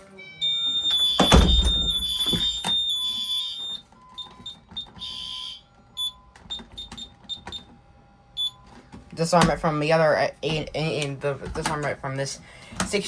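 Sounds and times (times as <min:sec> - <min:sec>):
high-pitched alarm tone: 0:00.0 - 0:07.6
short alarm beeps: 0:00.2 - 0:07.6, 0:08.4 - 0:08.6.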